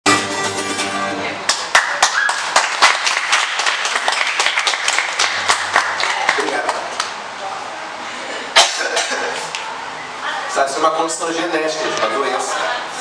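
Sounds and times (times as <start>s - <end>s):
small audience clapping: 1.4s - 7.2s
voices: 5.7s - 13.0s.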